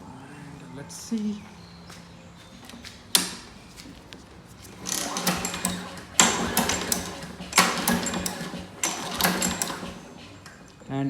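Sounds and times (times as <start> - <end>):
engine turning over whirring: 2.5 - 11.0
recoil starter pulls: 2.7 - 11.0.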